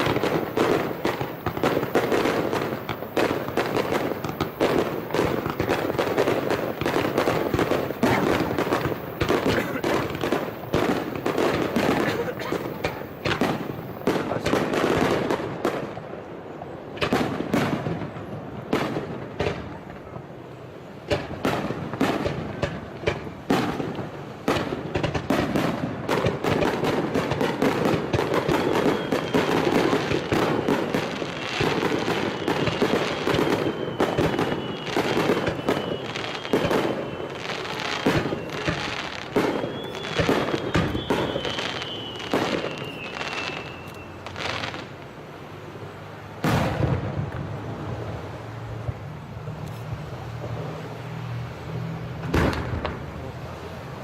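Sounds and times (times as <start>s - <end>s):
fireworks bursting and crackling: 0.0s - 51.3s, 52.1s - 54.0s
faint high descending whistle: 39.5s - 44.2s.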